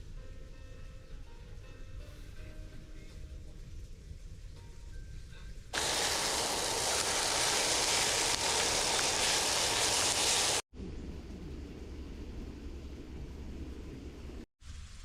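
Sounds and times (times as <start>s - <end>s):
low ambient rumble: 5.6s - 15.0s
loud rushing hiss: 5.8s - 10.6s.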